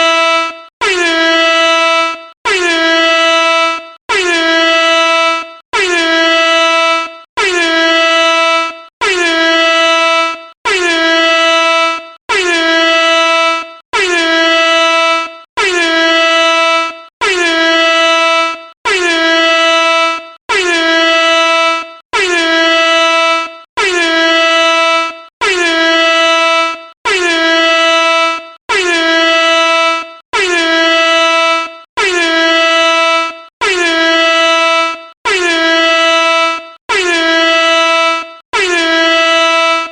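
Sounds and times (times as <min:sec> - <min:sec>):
air horn blasts: 0:00.0 - 0:39.9.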